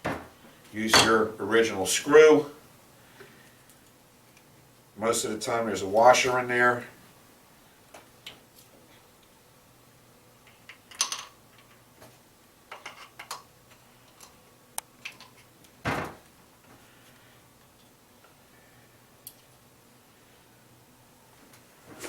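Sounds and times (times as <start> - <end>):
small clicks and taps of parts: 12.7 - 15.8, 19.2 - 19.6.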